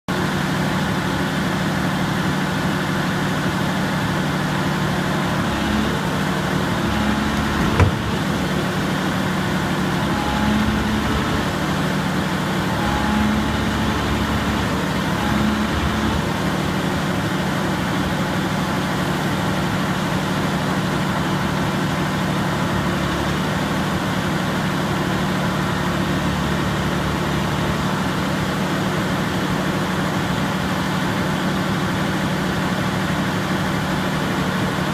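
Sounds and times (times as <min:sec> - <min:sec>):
excavator diesel engine running: 0:00.1 - 0:34.9
sharp knock: 0:07.4 - 0:08.3.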